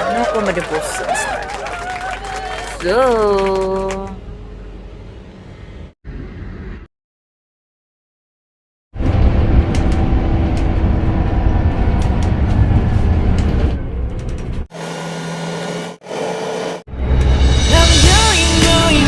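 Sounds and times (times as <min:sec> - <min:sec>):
bus engine rumble: 0:00.0 - 0:06.6, 0:09.0 - 0:14.7.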